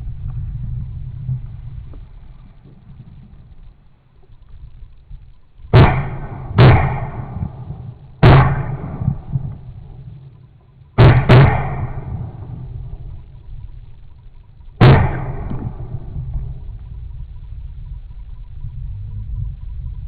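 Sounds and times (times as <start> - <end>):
shotgun shots: 5.7 - 10.3, 11.0 - 13.4, 14.8 - 16.8.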